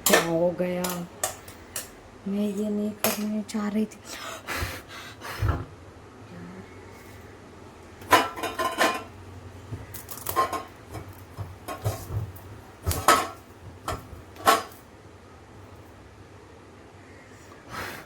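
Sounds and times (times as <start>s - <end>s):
metal bowl and utensils clanking: 0.0s - 1.9s, 8.0s - 9.2s, 9.8s - 14.8s.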